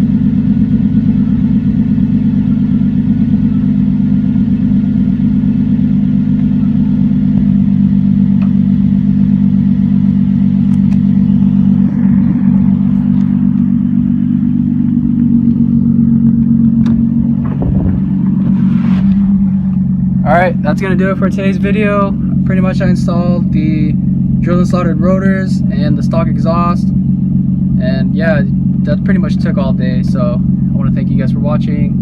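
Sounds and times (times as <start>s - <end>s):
car engine idling: 0.0s - 32.0s.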